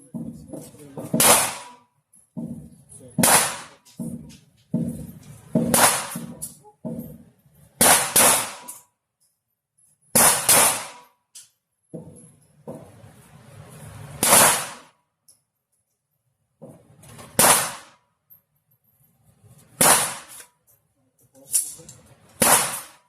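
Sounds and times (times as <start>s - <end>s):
gunshots with ringing echo: 1.1s - 1.8s, 3.2s - 3.8s, 4.8s - 7.2s, 7.8s - 8.8s, 10.1s - 11.1s, 14.2s - 14.9s, 17.3s - 18.0s, 19.8s - 20.4s, 22.4s - 23.0s.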